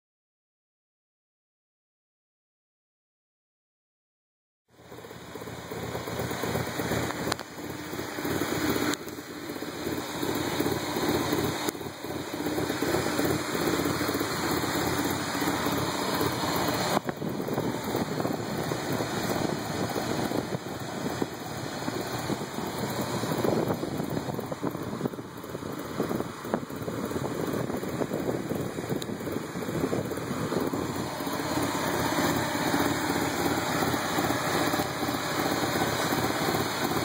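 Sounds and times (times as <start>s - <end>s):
car engine idling roughly: 4.8s - 37.0s.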